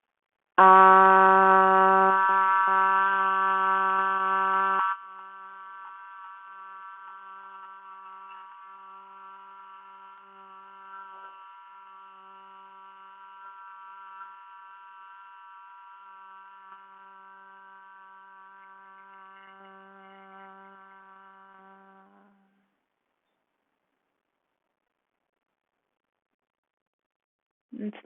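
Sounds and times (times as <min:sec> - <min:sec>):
low buzzy drone: 0:00.6 - 0:22.7.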